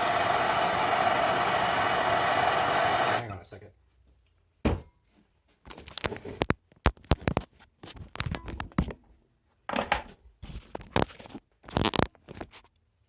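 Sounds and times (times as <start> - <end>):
tools clinking on a workbench: 9.7 - 10.2.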